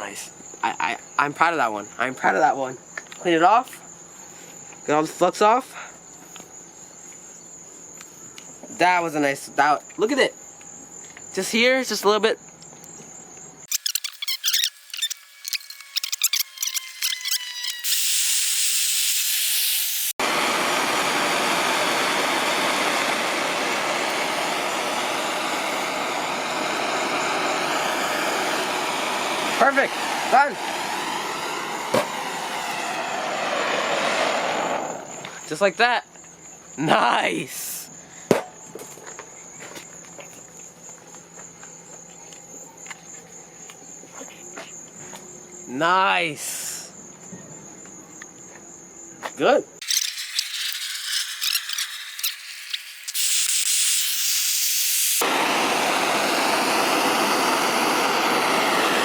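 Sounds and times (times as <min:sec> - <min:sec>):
high-pitched insect trill: 0:00.0 - 0:20.2, 0:34.9 - 0:55.3
thin high hiss: 0:13.7 - 0:20.2, 0:49.8 - 0:55.2
propane torch flame hissing: 0:14.4 - 0:35.2, 0:49.8 - 0:59.0.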